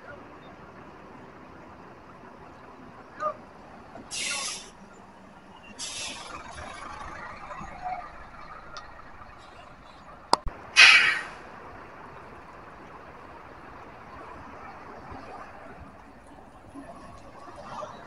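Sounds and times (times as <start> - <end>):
air brakes hissing: 4.1 - 5.0, 5.6 - 10.1, 10.8 - 11.4.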